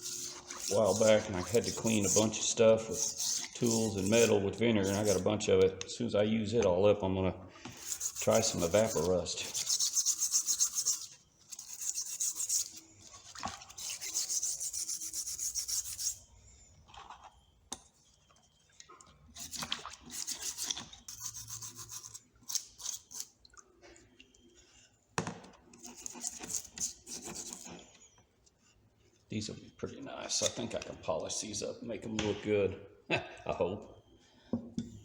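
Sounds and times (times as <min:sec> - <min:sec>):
brush scrubbing metal tools: 0:00.0 - 0:05.3, 0:07.7 - 0:16.3, 0:19.4 - 0:23.3, 0:25.8 - 0:27.9.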